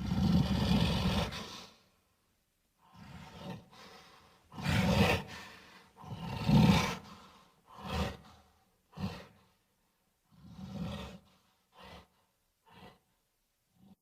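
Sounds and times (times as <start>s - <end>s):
gorilla roaring and grunting: 4.6s - 5.4s, 6.0s - 7.0s.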